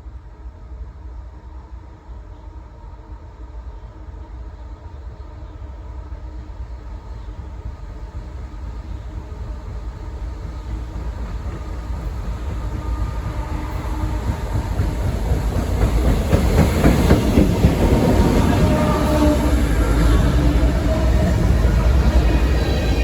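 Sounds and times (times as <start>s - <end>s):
diesel locomotive engine: 0.0s - 23.0s
train wheels clicking over rails: 10.0s - 23.0s.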